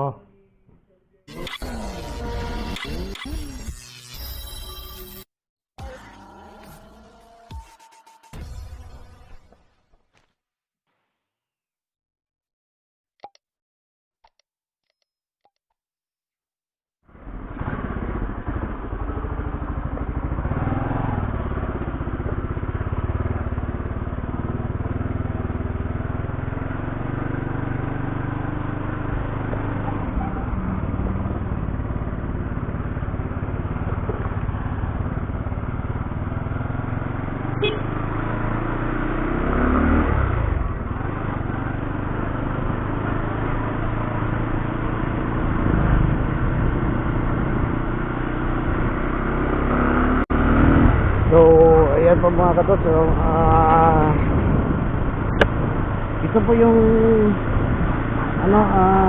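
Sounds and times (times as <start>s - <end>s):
motorcycle engine running: 17.2s - 59.0s
wind rumble: 50.6s - 58.2s.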